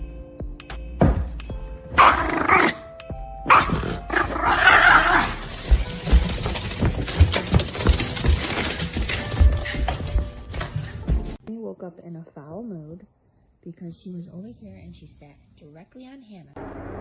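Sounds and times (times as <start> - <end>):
dog barking roughly: 2.0 - 2.8, 3.5 - 5.6.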